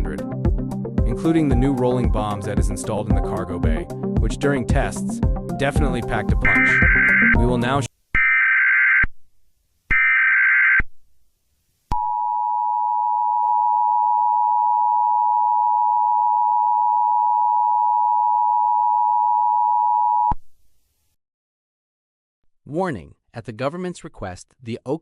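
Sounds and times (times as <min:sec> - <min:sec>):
buzzing digital data bursts: 0:06.5 - 0:07.4
two-tone attention signal: 0:06.5 - 0:07.4.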